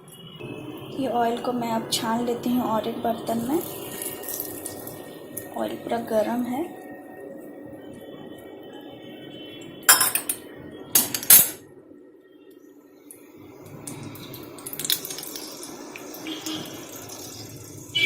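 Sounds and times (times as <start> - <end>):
metal pots and utensils clanking: 9.9 - 10.4, 11.0 - 11.6.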